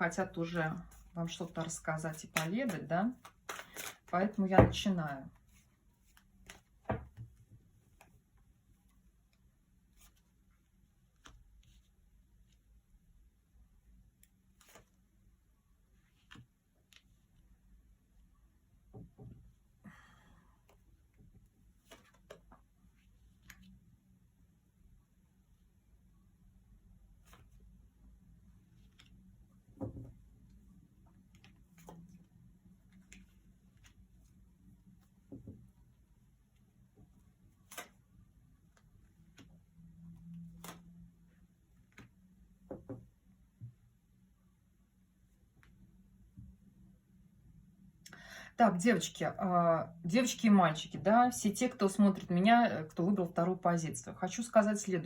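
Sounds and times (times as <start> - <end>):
cards rustling: 1.0 - 4.4
soft card clicks: 2.3 - 4.0.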